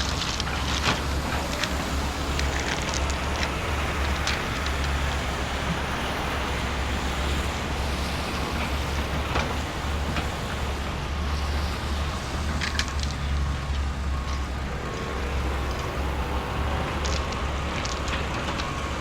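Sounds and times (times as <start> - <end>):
small stones clicking: 0.0 - 5.1, 12.4 - 19.0.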